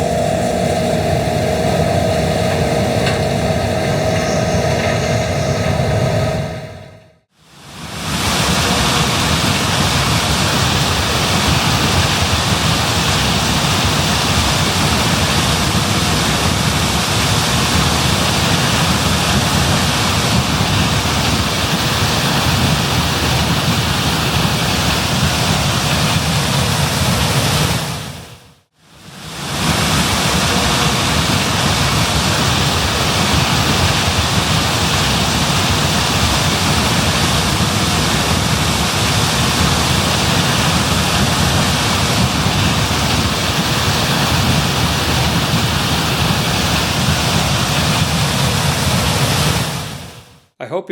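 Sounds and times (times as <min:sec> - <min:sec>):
combine harvester running: 0:00.0 - 0:07.2, 0:29.4 - 0:49.6.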